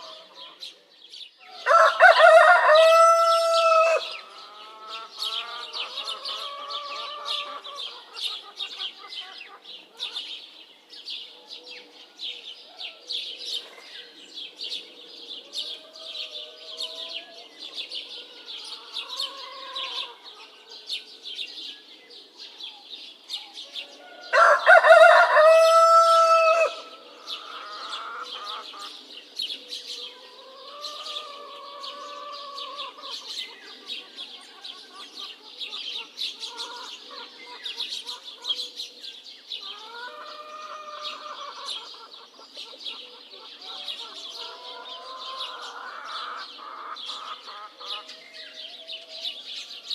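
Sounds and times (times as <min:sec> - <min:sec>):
small birds chirping: 0:00.0 - 0:49.9
rooster crowing: 0:01.5 - 0:07.8, 0:23.8 - 0:28.4.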